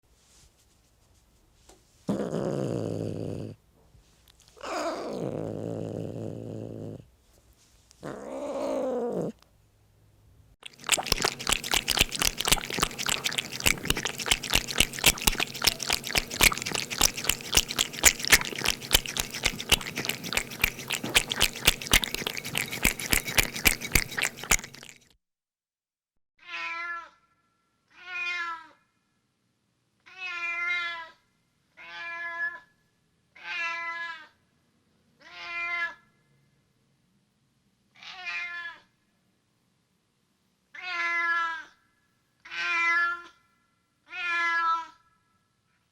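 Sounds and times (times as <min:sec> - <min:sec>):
cat growling: 0:02.1 - 0:03.6, 0:04.6 - 0:07.1, 0:08.0 - 0:09.4, 0:10.8 - 0:24.9
cat lapping milk: 0:10.6 - 0:25.2.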